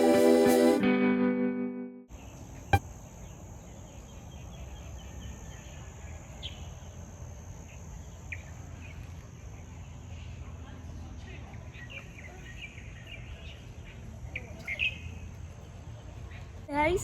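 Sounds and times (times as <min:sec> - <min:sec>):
insects droning: 0:02.1 - 0:12.8
faint cricket chirps: 0:02.1 - 0:15.1.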